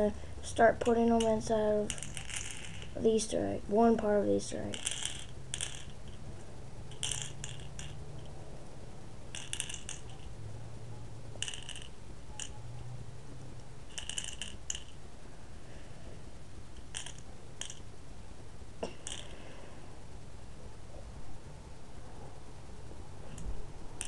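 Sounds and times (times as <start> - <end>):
faint low hum: 0.0 - 24.0
plastic beads rattling in plastic egg: 0.5 - 3.3, 4.6 - 6.2, 6.9 - 8.4, 9.3 - 10.4, 11.4 - 12.6, 13.9 - 15.0, 16.8 - 17.9.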